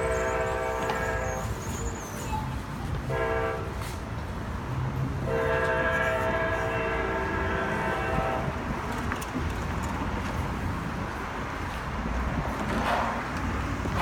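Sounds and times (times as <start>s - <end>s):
locomotive air horn blasts: 0.0s - 1.6s, 3.1s - 4.0s, 5.2s - 8.6s
passing train rumble: 0.0s - 14.0s.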